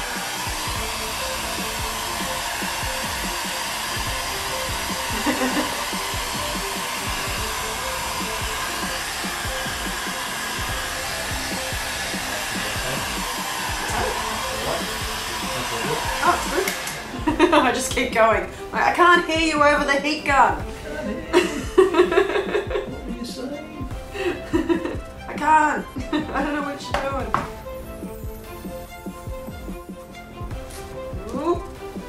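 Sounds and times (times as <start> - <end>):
heat gun blowing hot air: 0.0 - 19.8, 20.6 - 23.1.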